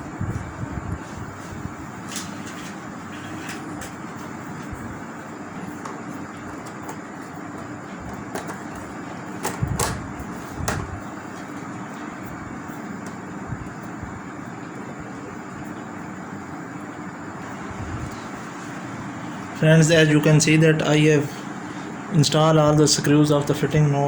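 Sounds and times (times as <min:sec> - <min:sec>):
steady background hum: 0:00.0 - 0:24.0
knocks and clicks of parts handled: 0:07.6 - 0:08.8.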